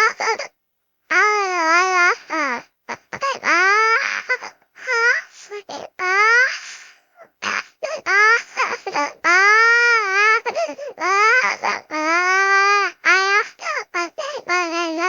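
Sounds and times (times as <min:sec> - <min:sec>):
child crying: 0:01.1 - 0:15.0
sobbing catches of breath: 0:06.3 - 0:08.9, 0:10.4 - 0:11.0, 0:13.5 - 0:14.5.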